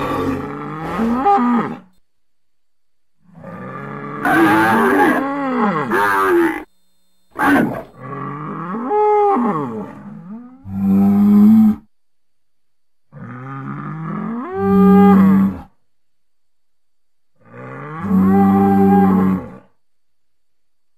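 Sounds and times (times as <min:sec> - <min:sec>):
bull mooing: 0:00.0 - 0:01.9, 0:03.3 - 0:06.7, 0:07.3 - 0:11.8, 0:13.1 - 0:15.7, 0:17.4 - 0:19.7.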